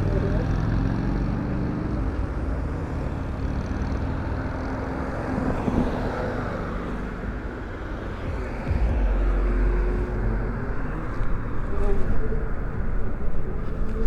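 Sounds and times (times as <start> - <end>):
road traffic rumble: 0.0 - 14.0
faint held engine tones: 6.6 - 14.0.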